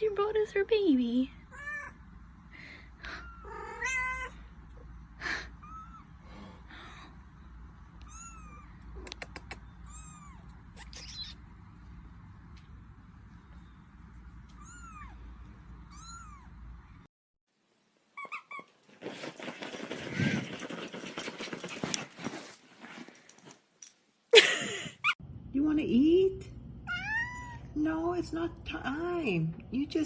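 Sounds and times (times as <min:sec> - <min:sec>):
sharp clicks: 0:09.0 - 0:09.6.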